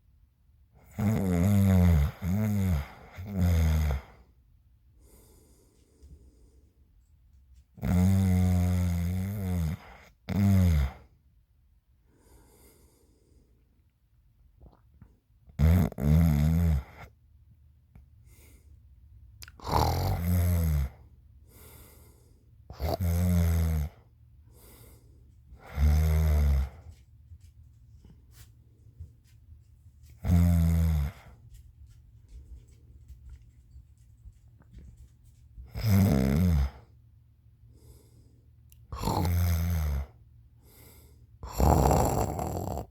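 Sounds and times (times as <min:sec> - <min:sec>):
faint low hum: 0:00.0 - 0:42.9
loud rasping snoring: 0:00.9 - 0:04.1, 0:07.8 - 0:11.0, 0:15.6 - 0:17.1, 0:19.6 - 0:21.0, 0:22.7 - 0:24.0, 0:25.6 - 0:26.7, 0:30.2 - 0:31.2, 0:35.7 - 0:36.8, 0:38.9 - 0:40.1, 0:41.4 - 0:42.9.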